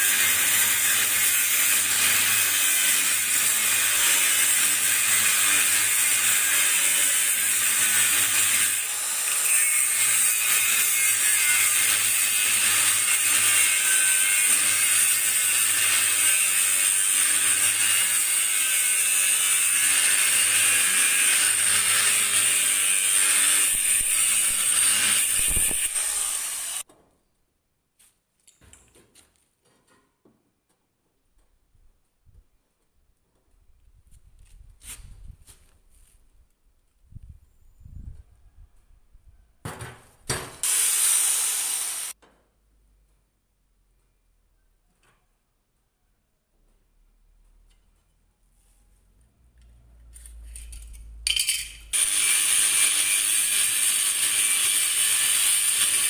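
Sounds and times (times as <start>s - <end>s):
harsh metal rasping: 0.0s - 26.8s, 51.5s - 56.0s.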